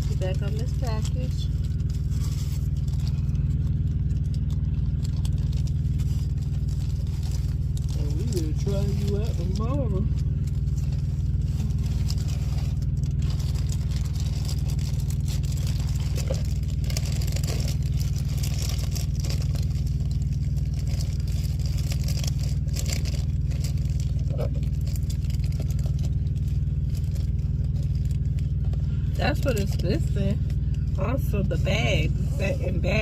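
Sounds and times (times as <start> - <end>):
truck engine idling: 0.0 - 33.0.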